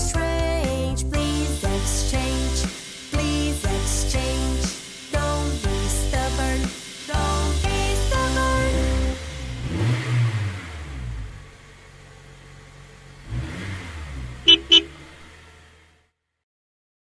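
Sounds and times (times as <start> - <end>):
cartoon bus engine driving by: 0.0 - 16.2
short horn beeps: 14.5 - 15.0.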